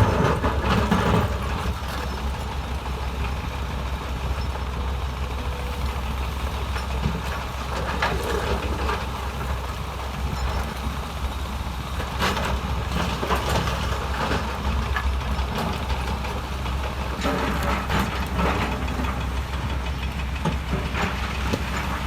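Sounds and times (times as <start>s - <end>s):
clanking and scraping: 0.0s - 2.6s, 12.0s - 22.0s
heavy diesel machinery running: 0.0s - 22.0s.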